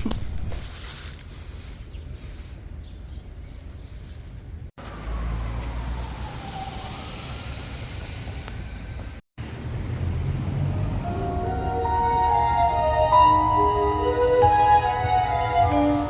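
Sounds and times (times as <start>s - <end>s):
passing cars rumbling: 4.8s - 13.6s
distant siren wailing: 5.0s - 7.6s.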